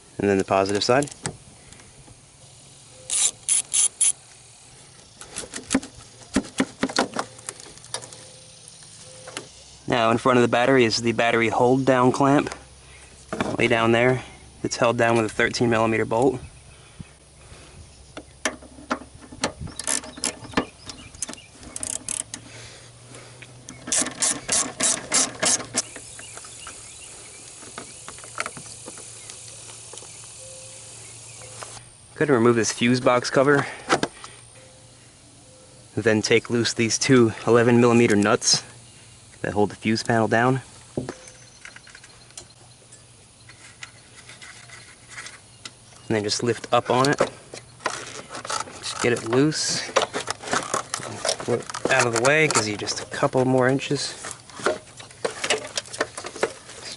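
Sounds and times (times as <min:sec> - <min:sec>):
ratchet wrench clicking: 0:02.6 - 0:04.6, 0:19.8 - 0:22.4, 0:23.7 - 0:26.2.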